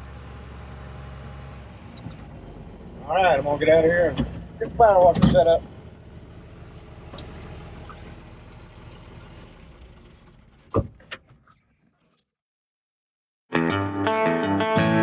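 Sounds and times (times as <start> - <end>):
diesel engine idling: 0.0 - 10.7.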